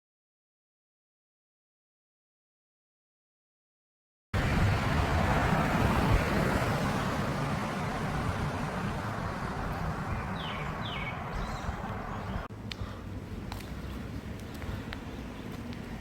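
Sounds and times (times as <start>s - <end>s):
road traffic rushing past: 4.4s - 16.0s.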